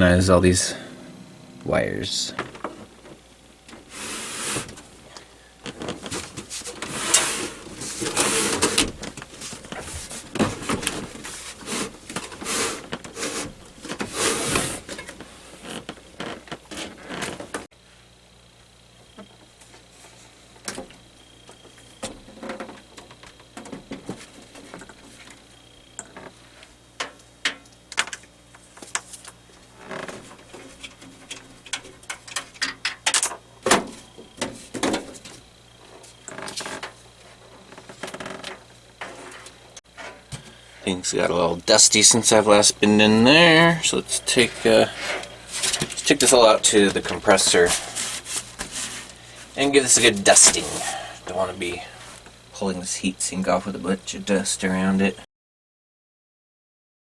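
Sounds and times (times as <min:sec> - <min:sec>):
low hum: 0:00.0 - 0:16.5
rustling and scraping: 0:02.3 - 0:18.1, 0:19.2 - 0:27.2, 0:28.0 - 0:40.6, 0:44.0 - 0:52.4.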